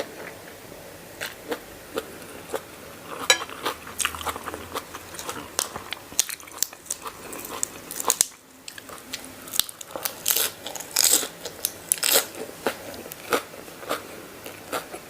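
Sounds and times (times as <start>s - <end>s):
person chewing crunchy food: 3.1s - 15.0s.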